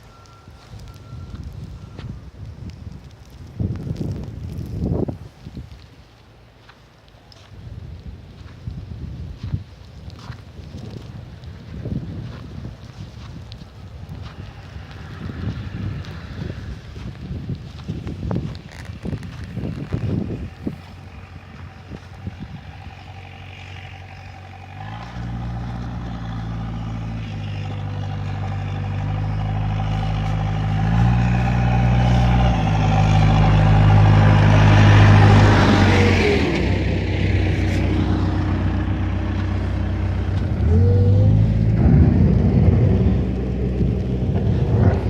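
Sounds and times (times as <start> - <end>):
vehicle engine running: 10.1 - 45.0.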